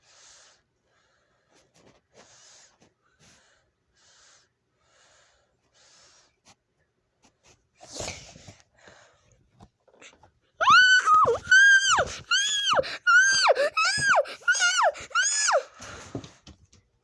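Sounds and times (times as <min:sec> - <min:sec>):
harsh breath: 0:10.6 - 0:16.2.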